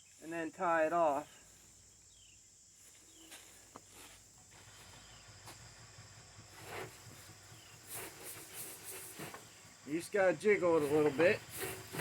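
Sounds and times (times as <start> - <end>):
hay net rustling: 7.8 - 9.7, 10.7 - 12.0.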